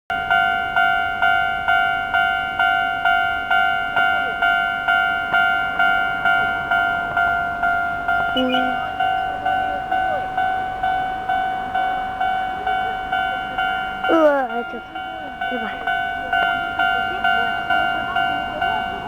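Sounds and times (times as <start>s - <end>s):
level-crossing warning bell ringing: 0.1s - 19.0s
brief low tone: 8.3s - 9.6s.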